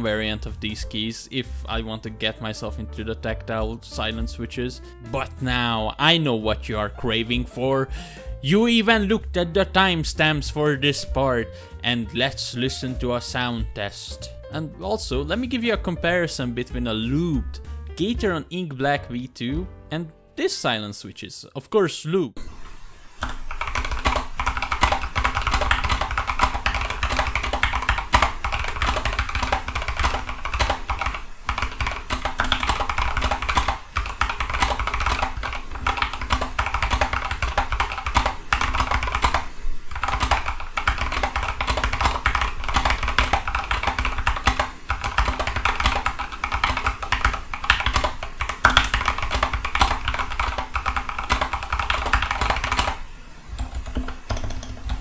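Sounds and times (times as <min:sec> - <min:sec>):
mechanical keyboard typing: 0:22.7 - 0:55.0.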